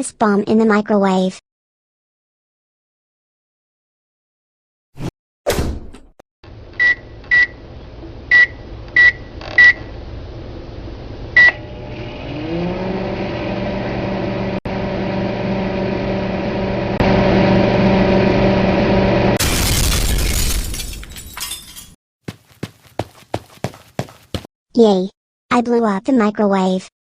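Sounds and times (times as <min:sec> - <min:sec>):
microwave oven humming: 0:06.5 - 0:19.4.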